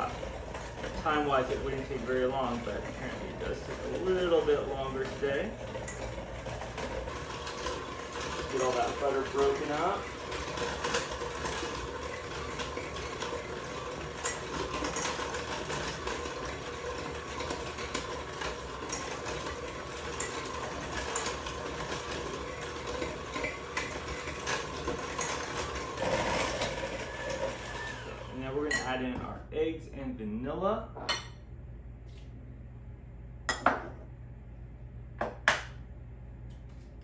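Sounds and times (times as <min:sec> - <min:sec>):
electric mixer motor whine: 0:00.0 - 0:28.7.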